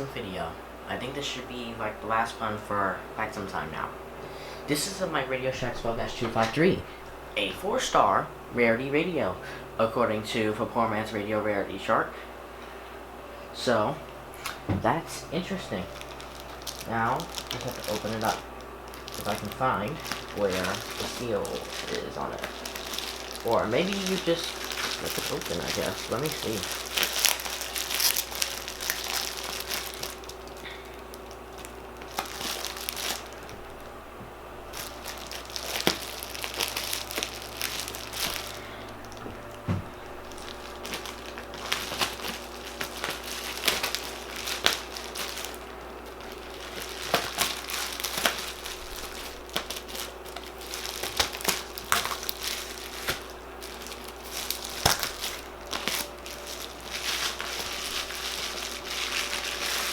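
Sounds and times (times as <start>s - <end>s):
cardboard crinkling and tearing: 15.3s - 33.6s, 34.7s - 59.9s.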